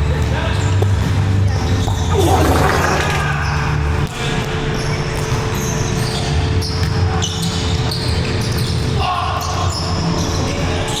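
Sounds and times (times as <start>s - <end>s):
sneakers squeaking on court: 0.2s - 11.0s
ball bouncing: 1.8s - 4.2s.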